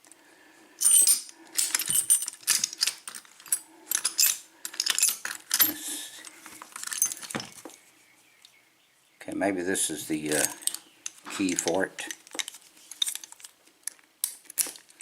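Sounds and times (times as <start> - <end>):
metal keys jingling: 0.8 - 5.8, 6.8 - 7.6.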